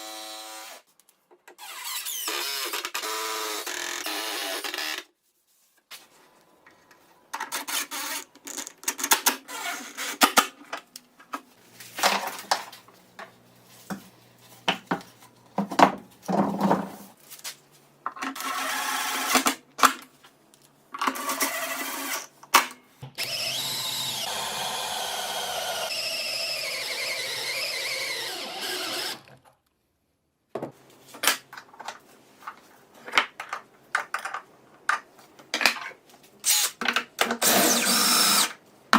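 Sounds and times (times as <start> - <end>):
power tool whining: 23.2 - 29.3, 37.4 - 38.6.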